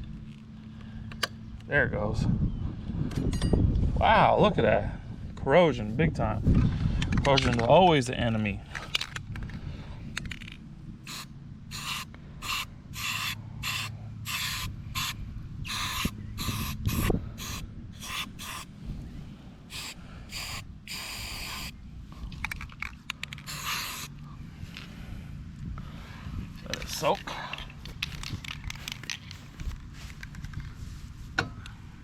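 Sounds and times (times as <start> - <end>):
hissing spray bursts: 11.1 - 18.7, 19.7 - 21.8, 23.4 - 24.1.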